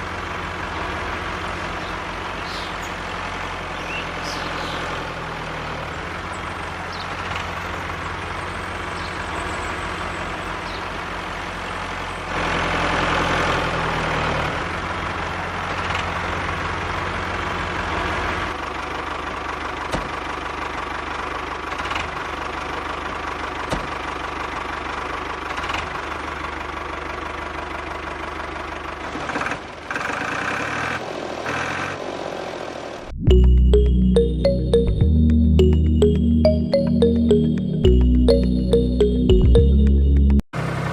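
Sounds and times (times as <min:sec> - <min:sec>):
tractor engine running: 0:00.0 - 0:30.8.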